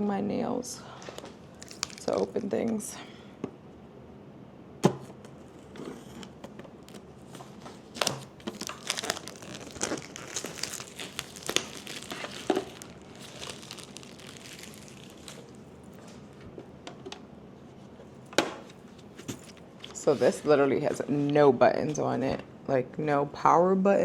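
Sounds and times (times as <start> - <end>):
packaging crinkling and tearing: 1.2 - 2.4, 5.5 - 16.2.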